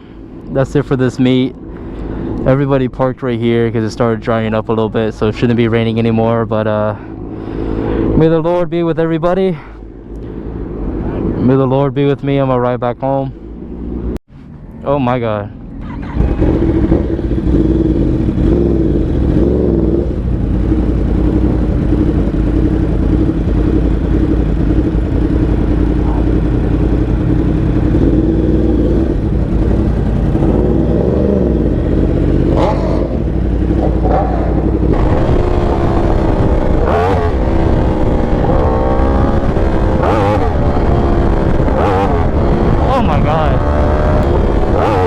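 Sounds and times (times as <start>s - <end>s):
sport bike engine revving: 15.8s - 45.0s.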